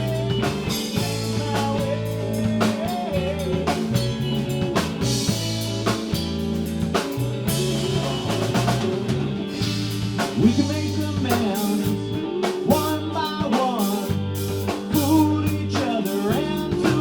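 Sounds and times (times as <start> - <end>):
long held bass notes: 0.0 - 13.5, 14.1 - 17.0
drum kit beat with snare rimshots: 0.0 - 17.0.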